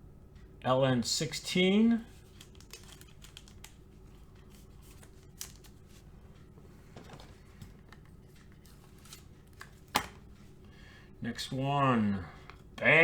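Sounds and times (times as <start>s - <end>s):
low steady hum: 0.0s - 13.0s
trading cards clicking and rustling: 2.0s - 10.4s.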